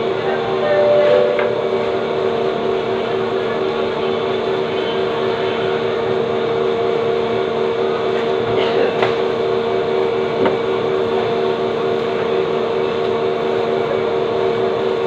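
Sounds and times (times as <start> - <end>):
machine hum with fixed tones: 0.0 - 6.2.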